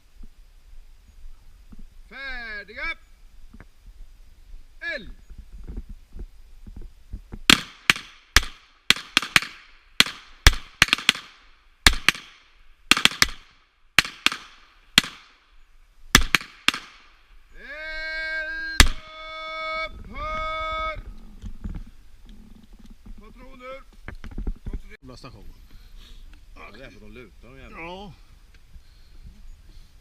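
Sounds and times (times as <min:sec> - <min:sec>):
pistol shots: 0:07.5 - 0:15.4, 0:16.1 - 0:17.1, 0:18.8 - 0:19.0.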